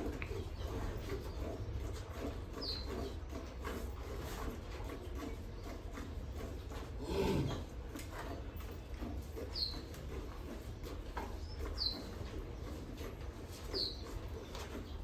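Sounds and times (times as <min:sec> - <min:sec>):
small bird chirping: 0:11.8 - 0:12.0, 0:13.8 - 0:14.0.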